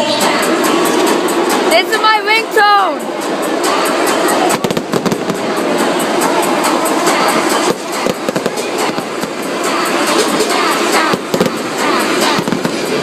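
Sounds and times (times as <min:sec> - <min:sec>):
crowd noise: 0:00.0 - 0:13.0
music: 0:00.0 - 0:13.0
fireworks crackling and popping: 0:03.9 - 0:13.0.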